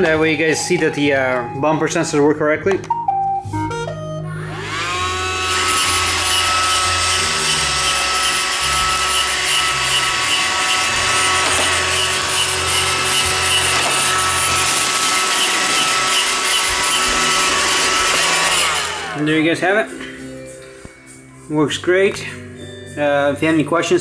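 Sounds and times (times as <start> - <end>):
robot vacuum whining and humming: 4.4 - 19.7.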